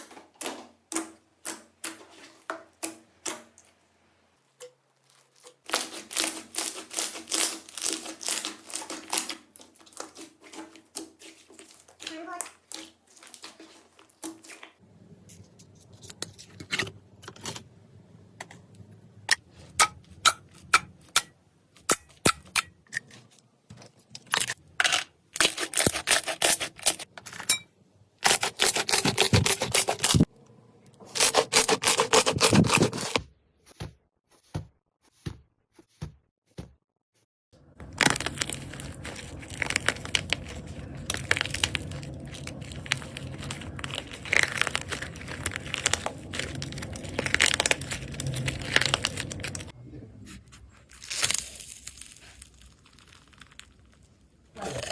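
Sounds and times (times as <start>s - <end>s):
slime crackling and crinkling: 4.9s - 14.8s, 28.2s - 30.3s, 37.8s - 49.8s, 50.5s - 54.9s.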